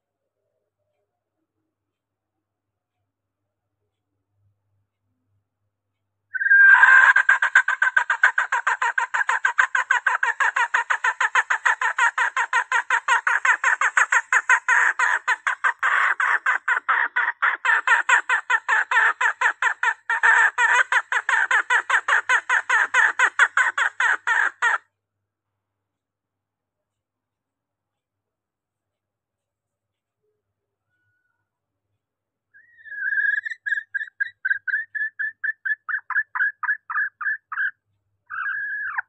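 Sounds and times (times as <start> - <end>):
junglefowl clucking squawks: 6.4 - 24.8, 32.6 - 39.0.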